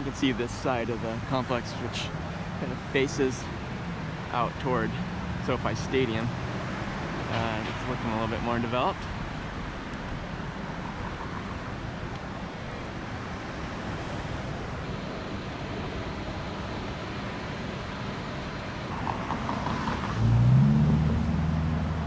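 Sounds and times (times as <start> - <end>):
street traffic: 0.0 - 22.0
vehicle engine rising in pitch: 14.1 - 22.0.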